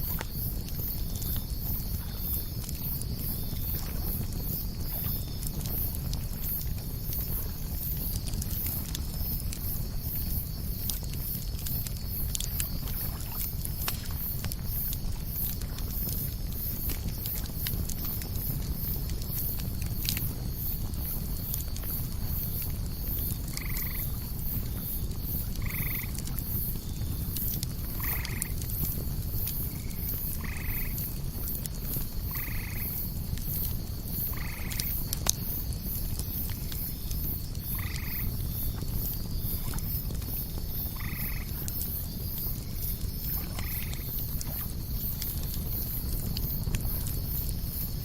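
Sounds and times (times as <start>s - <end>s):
campfire crackling: 0.0s - 48.0s
insects pulsing: 0.0s - 48.0s
frog croaking: 23.5s - 24.1s, 25.6s - 26.2s, 28.0s - 28.6s, 29.8s - 31.0s, 32.3s - 33.0s, 34.3s - 34.9s, 37.7s - 38.3s, 41.0s - 41.6s, 43.4s - 44.1s.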